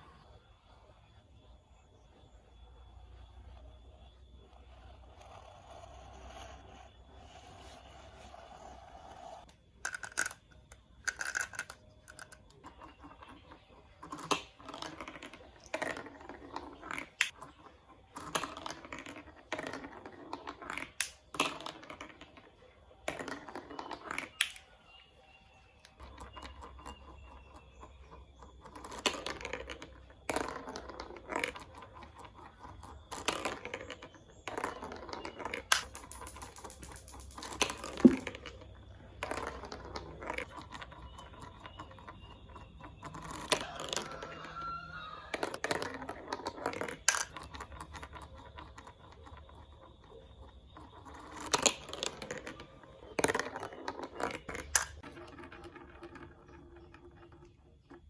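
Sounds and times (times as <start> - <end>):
faint steady hum: 0.0 - 46.2
plastic toy pieces clicking: 9.4 - 13.3, 14.0 - 17.4, 18.1 - 22.4, 23.0 - 24.8, 28.6 - 38.6, 45.3 - 49.4, 51.2 - 56.2.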